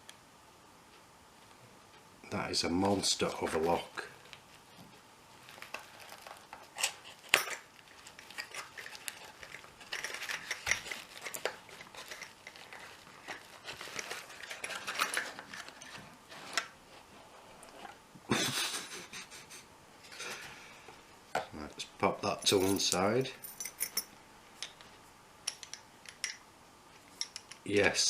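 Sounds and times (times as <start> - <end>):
packaging crinkling: 5.4 - 16.8.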